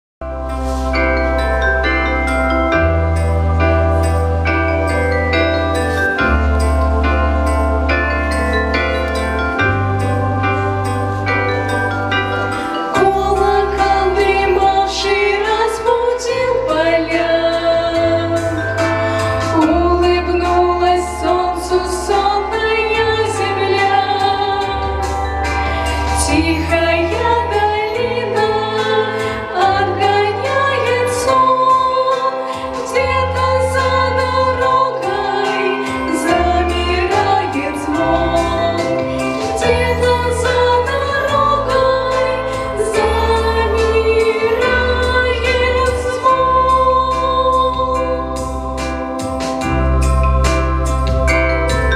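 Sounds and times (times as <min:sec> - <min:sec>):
instrumental accompaniment: 0:00.2 - 0:51.9
women singing in harmony: 0:12.8 - 0:48.6.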